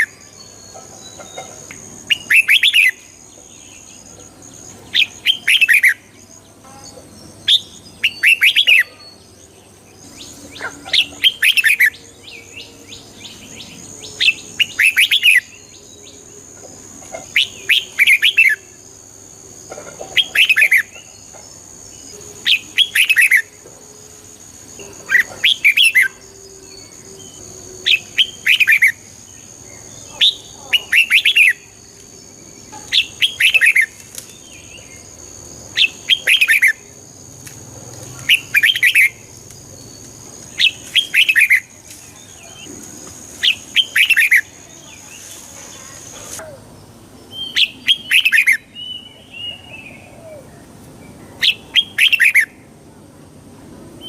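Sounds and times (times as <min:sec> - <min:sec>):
bulbul singing warbling phrases: 0:04.9 - 0:16.2, 0:29.8 - 0:31.8.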